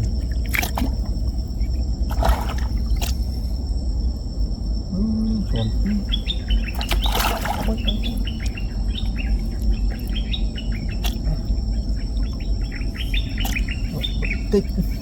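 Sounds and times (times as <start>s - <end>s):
insects droning: 0.0s - 15.0s
low rumble: 0.0s - 15.0s
bird chirping rapidly: 5.5s - 15.0s.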